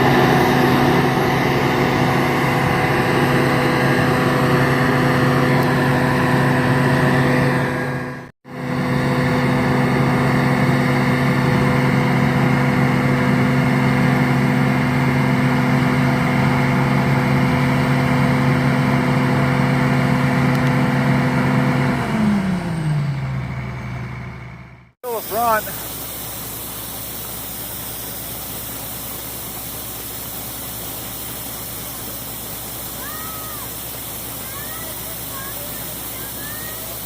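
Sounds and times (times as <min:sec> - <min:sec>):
diesel engine running under load: 0:00.0 - 0:37.0.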